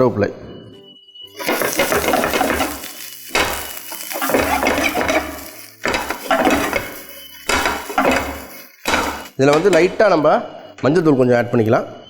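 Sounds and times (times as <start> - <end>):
food frying in oil: 1.3 - 9.4
spatula scraping in a pan: 1.3 - 10.0.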